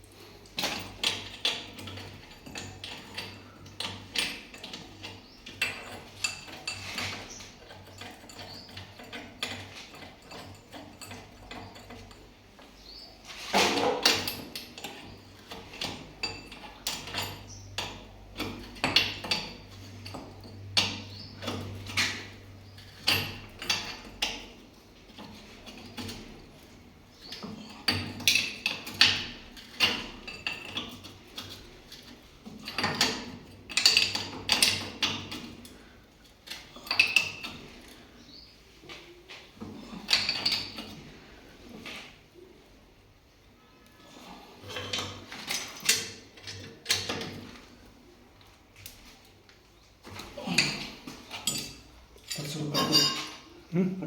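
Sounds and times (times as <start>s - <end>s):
metal tools knocking and clinking: 0.6s - 12.4s, 13.5s - 24.5s, 27.2s - 38.0s, 39.6s - 41.0s, 50.1s - 53.5s.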